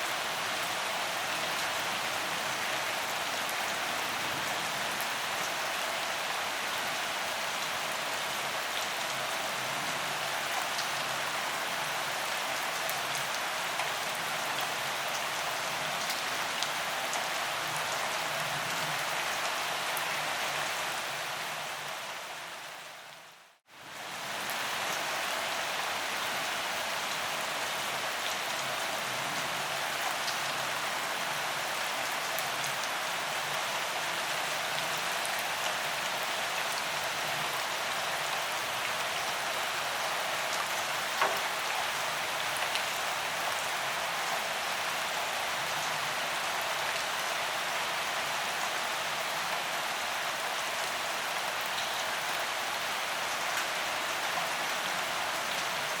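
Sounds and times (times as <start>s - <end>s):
steady rain hiss: 0.0s - 56.0s
rain drop ticks: 41.2s - 41.6s.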